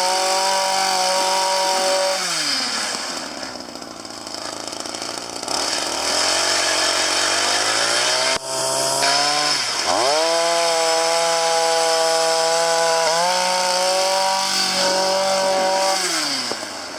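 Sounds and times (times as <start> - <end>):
ice auger engine drilling: 0.0 - 16.9.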